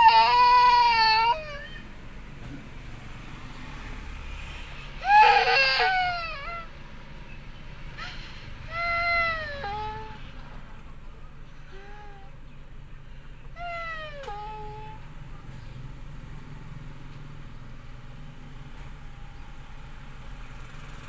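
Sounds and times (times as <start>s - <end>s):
cat wailing meows: 0.0s - 1.7s.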